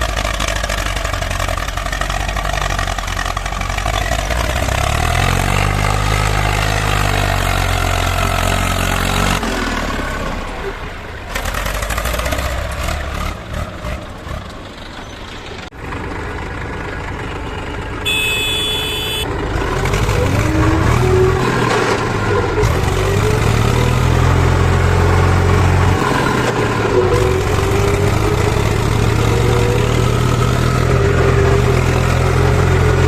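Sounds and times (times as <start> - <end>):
heavy diesel engines running: 0.0 - 33.0
high horn-like tone: 18.0 - 19.3.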